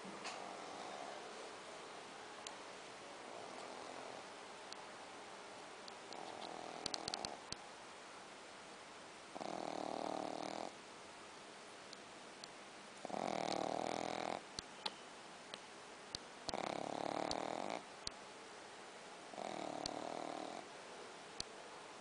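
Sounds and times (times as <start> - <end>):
dog snoring: 0.4 - 1.2, 3.3 - 4.3, 6.1 - 7.4, 9.3 - 10.8, 13.0 - 14.5, 16.5 - 17.9, 19.3 - 20.7
faint ticks: 5.8 - 7.6, 13.4 - 13.7, 19.7 - 20.1.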